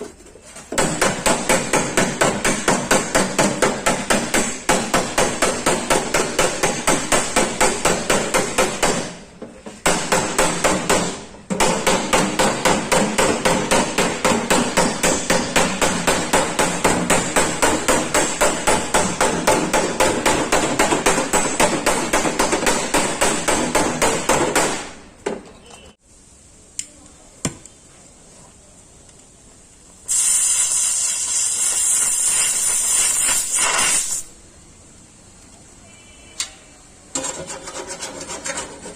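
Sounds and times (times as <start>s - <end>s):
hammer beating sheet metal: 0.7s - 25.1s.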